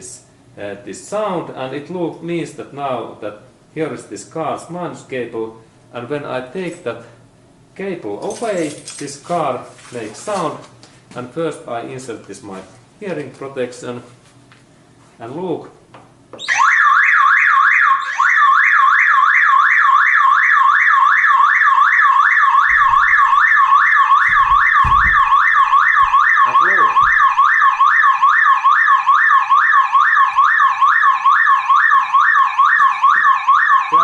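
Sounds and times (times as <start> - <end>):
car alarm siren warbling: 16.4 - 34.0.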